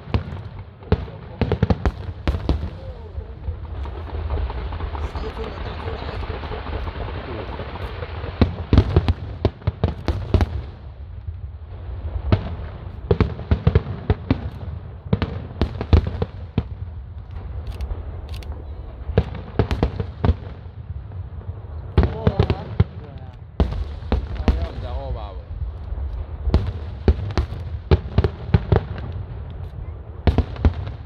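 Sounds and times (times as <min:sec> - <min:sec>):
fireworks bangs: 0:00.0 - 0:31.0.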